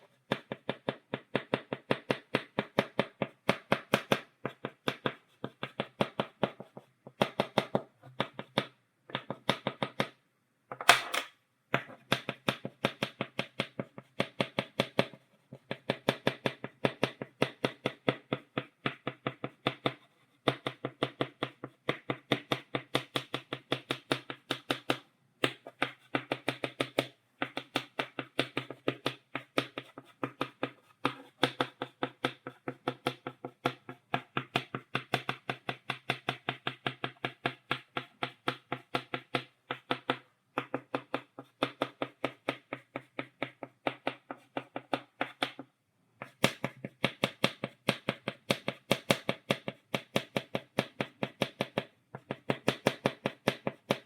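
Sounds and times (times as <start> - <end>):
chalk tapping on blackboard: 0.0 - 10.2, 11.7 - 54.0
chalk stroke on blackboard: 19.0 - 20.5.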